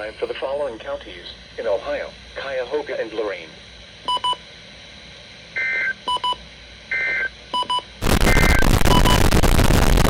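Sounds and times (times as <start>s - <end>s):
short electronic beeps: 7.6s - 9.2s
radio static hiss: 8.0s - 10.0s
warbling data bursts: 8.0s - 10.0s.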